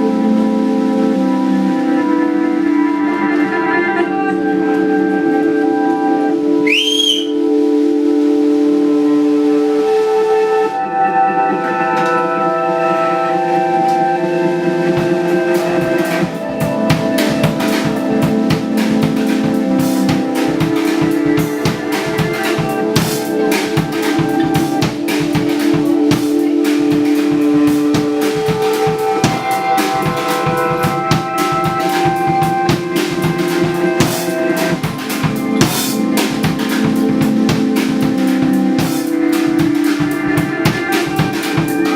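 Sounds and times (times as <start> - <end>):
held chords: 0.0 - 41.9
drum kit beat: 6.6 - 7.4, 13.8 - 41.9.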